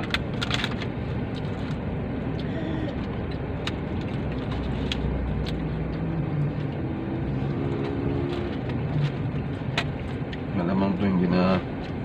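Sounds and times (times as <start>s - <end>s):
faint hum: 0.0s - 9.2s
car interior rumble: 0.0s - 12.0s.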